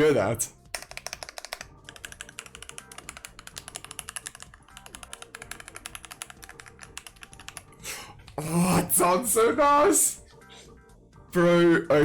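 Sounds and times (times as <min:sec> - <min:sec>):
mechanical keyboard typing: 0:00.7 - 0:07.8.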